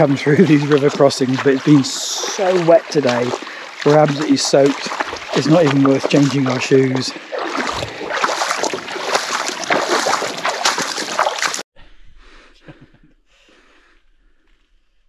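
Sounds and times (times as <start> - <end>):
water splashing and sloshing: 0.0 - 11.6.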